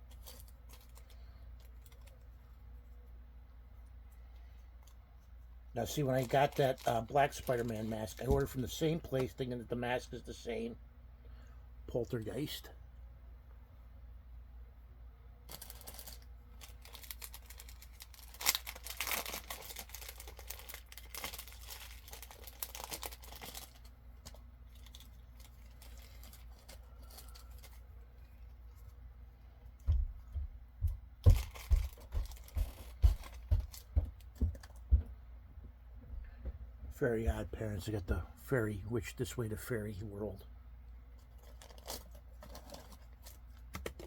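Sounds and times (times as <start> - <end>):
plastic packaging crinkling: 0.0 - 2.6, 5.8 - 9.4, 15.5 - 29.0, 31.2 - 34.8, 41.2 - 44.0.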